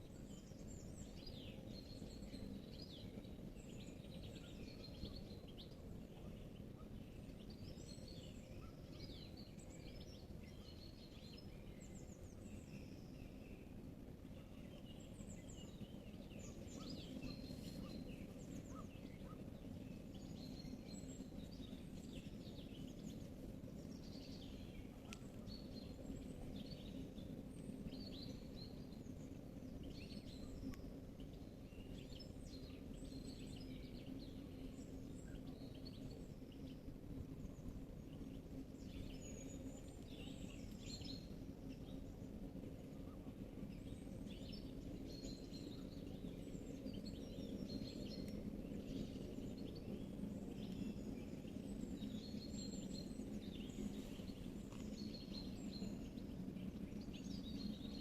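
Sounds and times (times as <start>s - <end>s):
low background rumble: 0.0s - 58.0s
songbirds singing: 0.0s - 58.0s.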